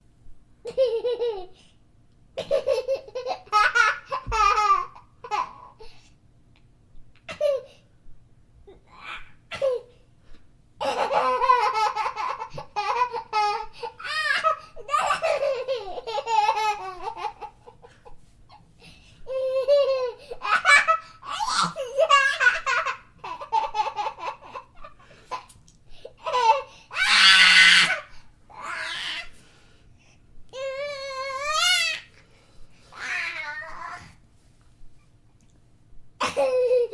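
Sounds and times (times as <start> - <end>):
young child laughing: 0.6 - 1.7, 2.4 - 5.9, 10.8 - 18.6, 19.2 - 25.6, 36.2 - 36.9
child squealing with laughter: 26.9 - 28.1.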